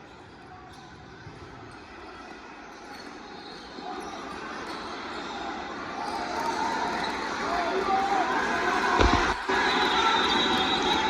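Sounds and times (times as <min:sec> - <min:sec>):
hubbub of hall: 0:00.0 - 0:11.0
ball bouncing on court: 0:09.0 - 0:09.4.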